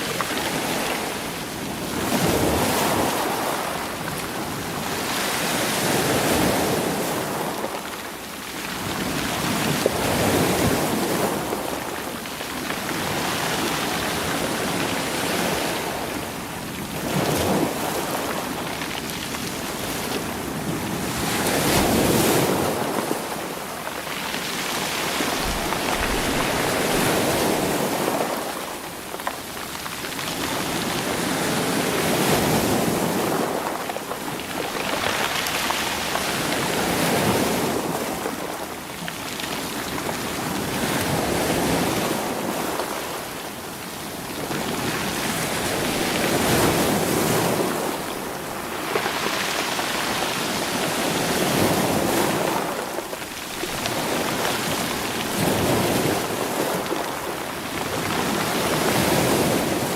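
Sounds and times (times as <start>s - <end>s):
sea waves washing over rocks: 0.0s - 59.9s
rocks clattering in surf: 17.0s - 38.0s.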